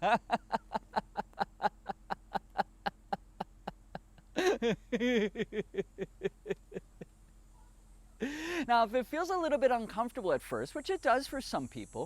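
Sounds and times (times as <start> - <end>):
man laughing: 0.0 - 7.2, 8.2 - 8.7.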